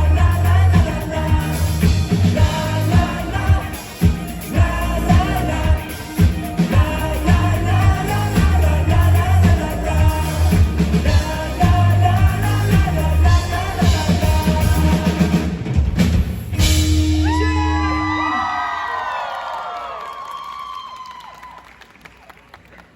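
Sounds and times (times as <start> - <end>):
person singing: 0.0 - 15.6
live rock band playing: 0.0 - 18.4
crowd whooping and cheering: 17.0 - 22.6.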